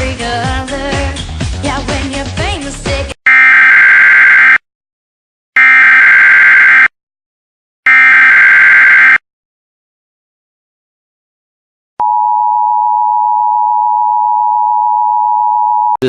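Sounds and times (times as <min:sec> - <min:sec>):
music: 0:00.0 - 0:03.2.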